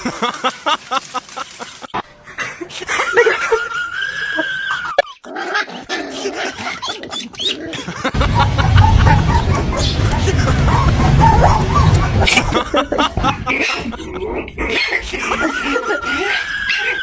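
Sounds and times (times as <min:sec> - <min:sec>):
loud low rumble: 0:08.1 - 0:12.6
dog whining and yipping: 0:08.8 - 0:12.4.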